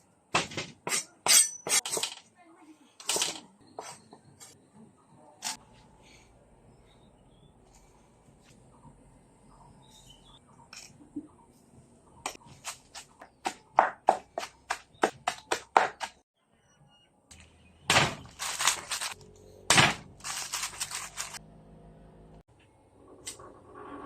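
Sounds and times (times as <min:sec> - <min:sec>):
scraping or rustling: 0:18.2 - 0:19.2, 0:20.1 - 0:21.4.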